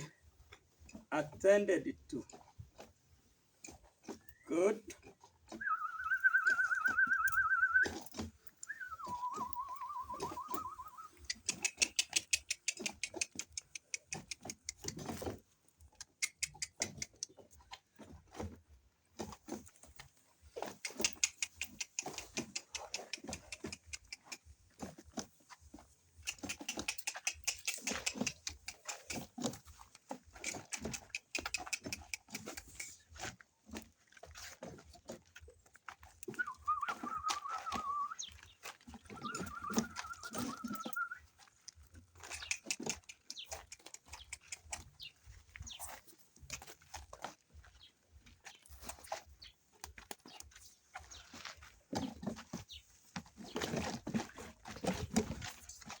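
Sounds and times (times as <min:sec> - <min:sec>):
person whistling warbling calls: 0:05.5 - 0:11.3, 0:36.3 - 0:38.4, 0:39.0 - 0:41.3.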